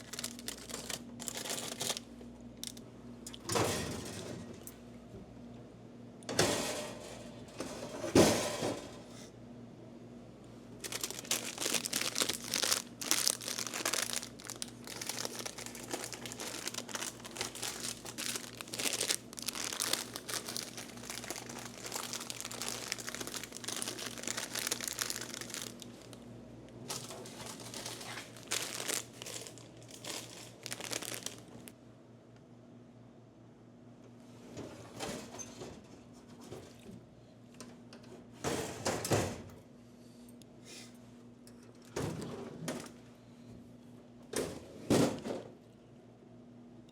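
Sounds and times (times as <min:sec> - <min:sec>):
plastic bags crinkling: 0:00.0 - 0:02.8, 0:10.8 - 0:31.7
steady low hum: 0:07.0 - 0:34.3.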